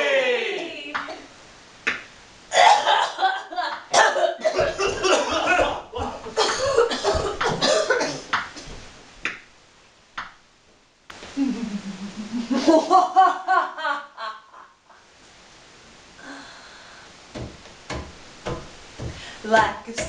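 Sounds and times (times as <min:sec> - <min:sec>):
person coughing: 0:02.5 - 0:03.2, 0:03.9 - 0:08.3.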